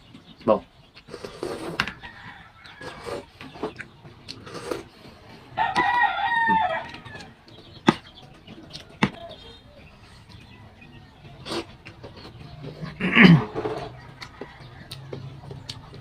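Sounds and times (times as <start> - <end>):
rooster crowing: 1.9 - 3.2, 5.6 - 7.4.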